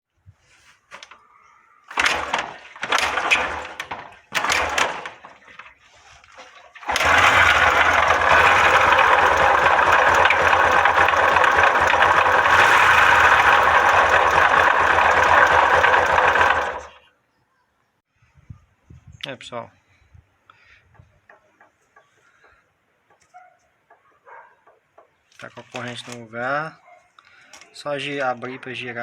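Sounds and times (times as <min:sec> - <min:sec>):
motorcycle engine clattering: 0:01.9 - 0:17.0.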